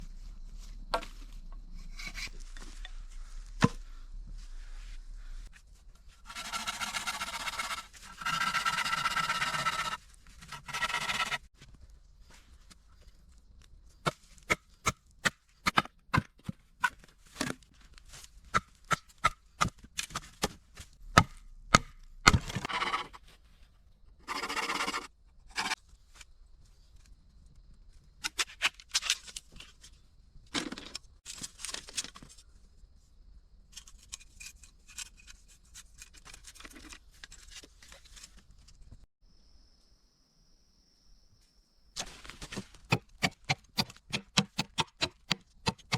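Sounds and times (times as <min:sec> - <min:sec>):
blade scraping bamboo: 0:06.2 - 0:11.5, 0:42.9 - 0:45.9
sharp chopping knocks: 0:21.2 - 0:22.6, 0:42.9 - 0:45.9.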